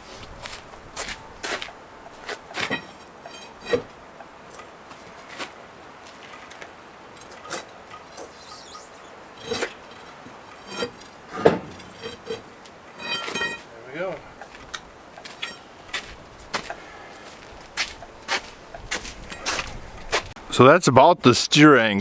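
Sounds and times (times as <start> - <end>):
tools and metal parts clinking: 1.1 - 4.0, 7.2 - 16.8.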